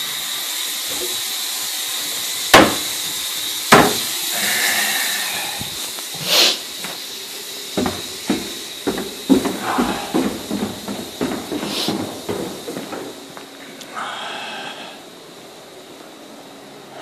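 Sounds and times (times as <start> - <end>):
sharp knocks: 2.5 - 2.9, 3.7 - 4.1, 7.8 - 13.2
small bumps: 7.8 - 13.6.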